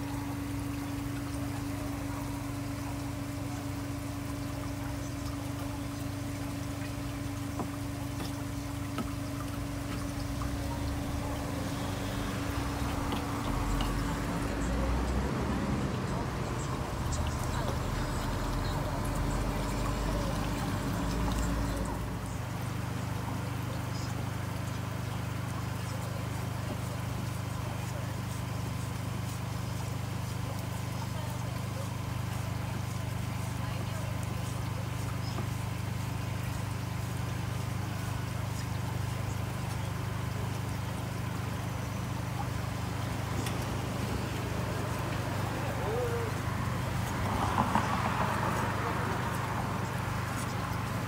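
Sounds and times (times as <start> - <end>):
electric motor hum: 0.0 - 22.4
low machine hum: 0.0 - 51.0
water running: 0.0 - 51.0.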